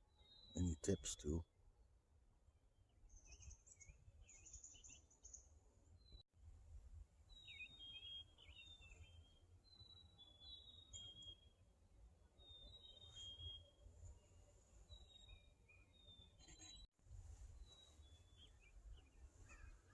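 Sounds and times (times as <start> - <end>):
songbird calls: 7.3 - 11.5, 12.4 - 13.8
wind rumble on microphone: 17.0 - 19.9.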